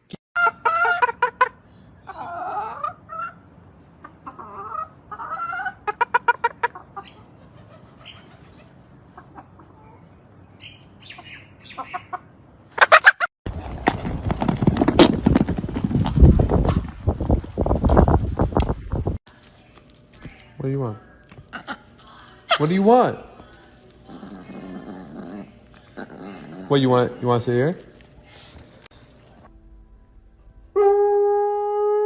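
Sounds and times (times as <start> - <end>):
bird clucking and squawking: 0.4 - 10.0, 10.6 - 13.3.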